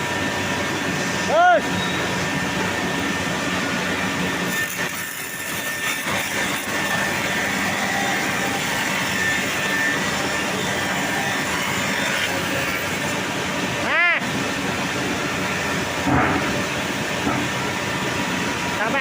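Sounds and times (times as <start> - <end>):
rip saw cutting wood: 4.4 - 13.1.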